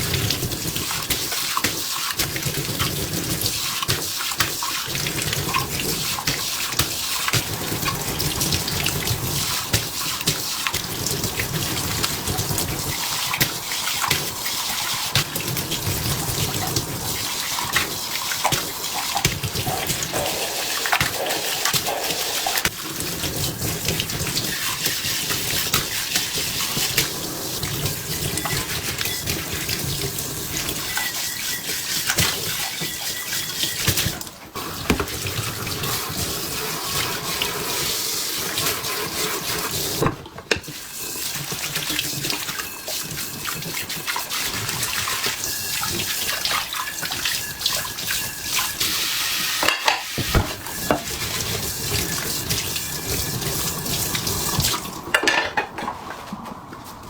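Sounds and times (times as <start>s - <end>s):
tap water running into sink: 0.0s - 55.4s
kitchenware knocks and clinks: 49.6s - 51.1s, 55.1s - 56.0s.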